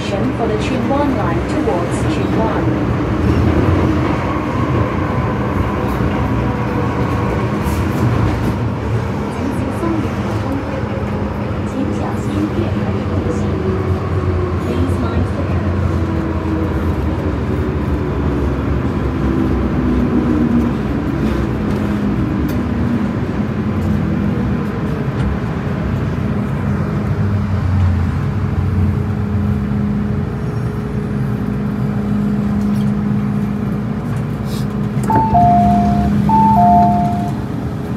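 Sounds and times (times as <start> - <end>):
train electrical hum and rumble: 0.0 - 37.9
train motor tones: 35.0 - 37.6.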